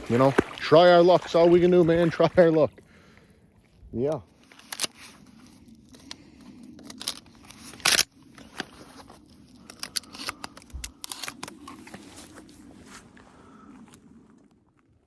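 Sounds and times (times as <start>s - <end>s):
crunching and crackling handling: 4.0s - 14.6s.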